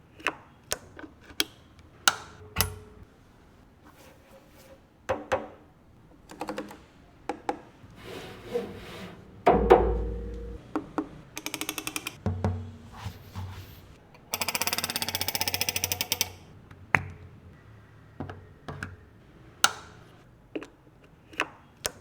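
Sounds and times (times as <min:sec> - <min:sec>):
deep bass boom: 0:09.5 - 0:10.6.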